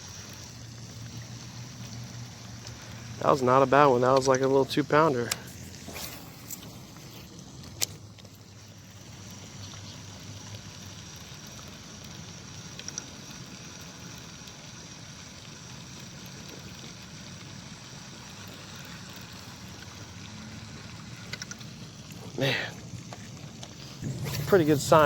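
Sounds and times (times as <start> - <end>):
hiss: 0.0 - 25.0
low rumble: 22.8 - 25.0.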